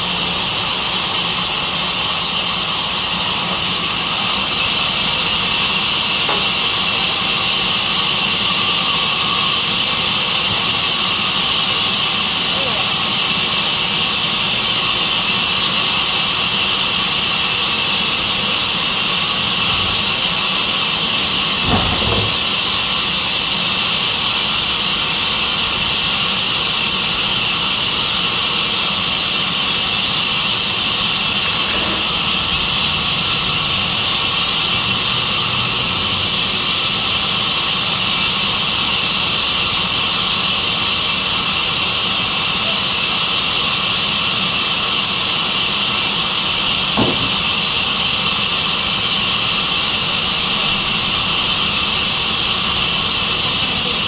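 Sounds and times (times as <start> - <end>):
band saw hissing: 0.0 - 54.0
knock: 21.6 - 22.4, 47.0 - 47.5.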